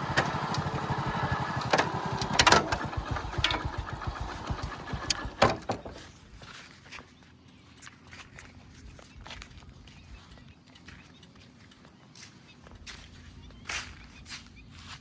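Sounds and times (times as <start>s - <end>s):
sharp clanks: 0.0s - 6.0s
engine thumping: 0.0s - 6.2s.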